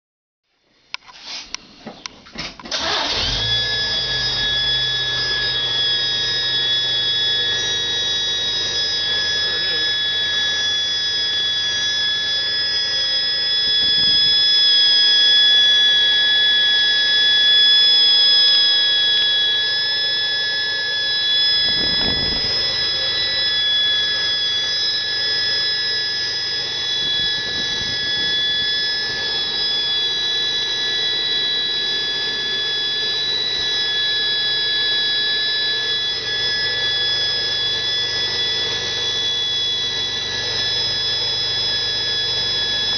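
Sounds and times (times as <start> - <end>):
high-pitched vacuum leak whistle: 0.9 - 42.9
engine running: 21.6 - 23.3.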